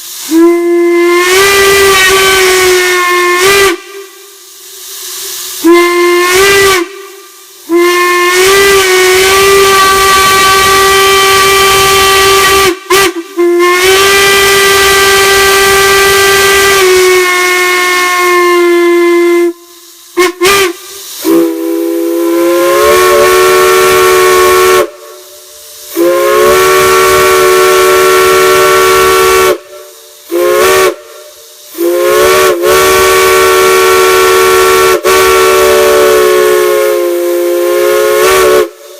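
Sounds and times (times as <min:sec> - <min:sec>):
steam hissing: 0:00.0 - 0:38.9
steam whistle blasts: 0:00.0 - 0:38.9.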